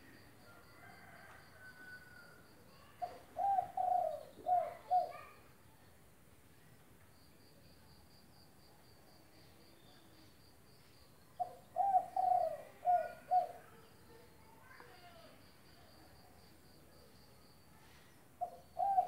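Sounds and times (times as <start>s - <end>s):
dove cooing: 3.0s - 5.4s, 11.4s - 13.8s, 18.4s - 19.0s.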